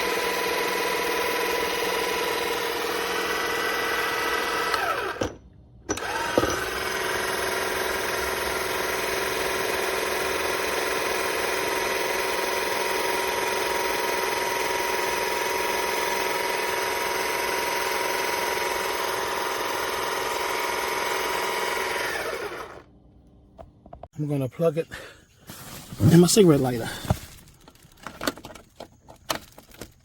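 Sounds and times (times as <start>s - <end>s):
electric motor whining: 0.0s - 5.3s, 6.0s - 22.9s.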